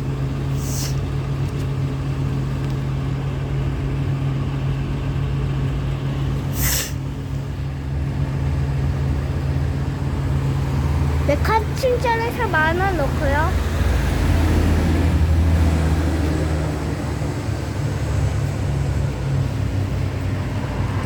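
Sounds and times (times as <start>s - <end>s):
bus diesel engine idling: 0.0s - 21.0s
pneumatic air hiss: 0.5s - 1.0s, 6.5s - 7.0s.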